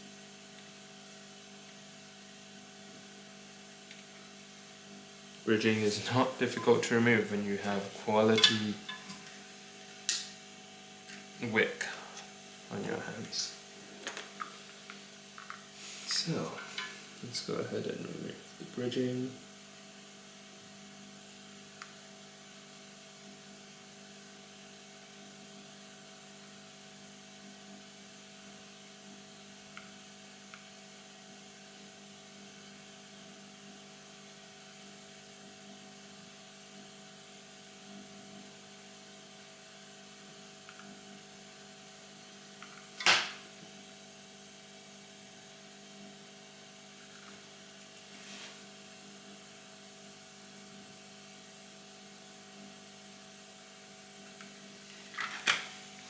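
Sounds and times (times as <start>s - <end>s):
small motor humming with whine: 0.0s - 42.9s.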